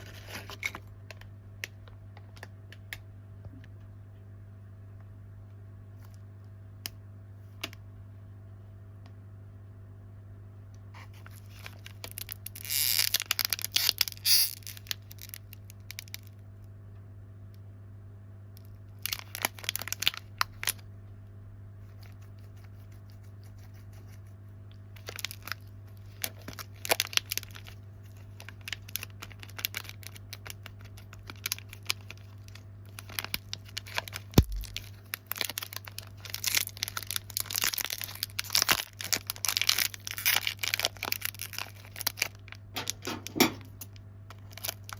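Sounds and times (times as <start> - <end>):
steady low hum: 0.0 - 44.9
snack packaging crinkling: 11.2 - 16.4, 18.6 - 20.9, 21.8 - 44.9.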